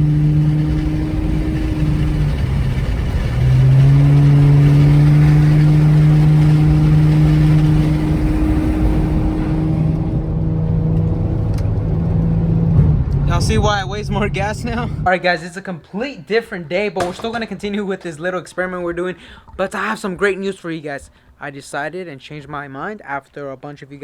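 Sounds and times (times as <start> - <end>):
car engine accelerating: 0.0 - 15.1.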